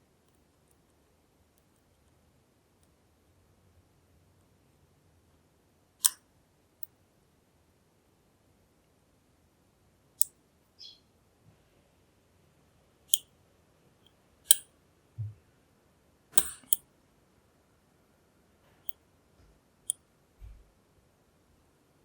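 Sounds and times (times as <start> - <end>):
lock picks clicking in lock: 16.4 - 16.8.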